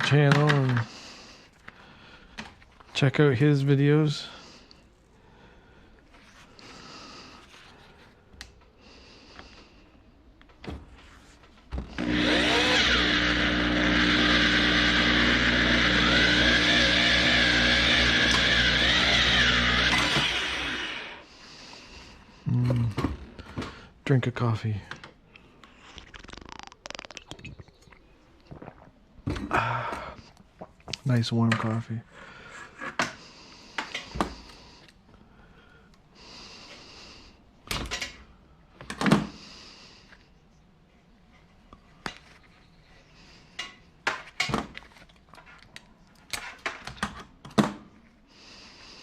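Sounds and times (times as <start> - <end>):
electric drill running: 11.8 - 21.3
person slurping coffee: 25.7 - 29.0
person sighing: 29.4 - 30.2.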